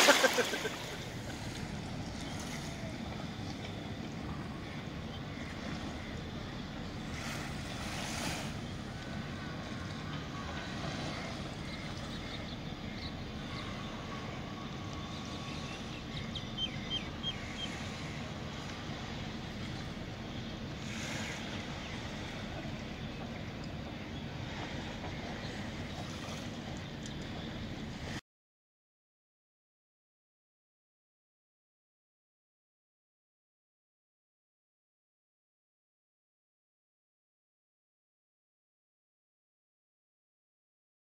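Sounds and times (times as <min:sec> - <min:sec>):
sea wash: 0:00.0 - 0:28.2
wind: 0:00.0 - 0:28.2.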